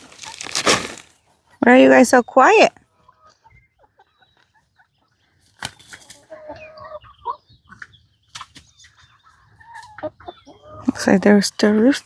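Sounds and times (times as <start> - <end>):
wings rustling and flapping: 0.0 - 1.1
hens clucking softly: 2.8 - 12.0.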